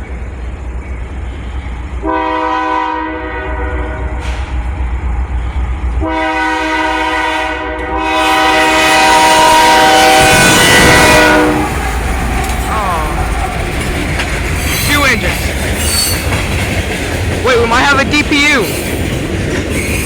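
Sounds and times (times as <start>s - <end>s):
diesel engine rumble: 0.0s - 6.9s, 9.7s - 19.7s
locomotive air horn blasts: 2.0s - 4.5s, 6.0s - 11.8s.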